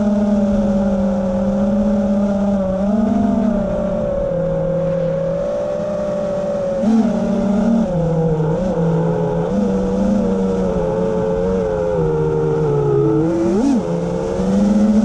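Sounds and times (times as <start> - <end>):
electric propeller motors humming: 0.0 - 15.0.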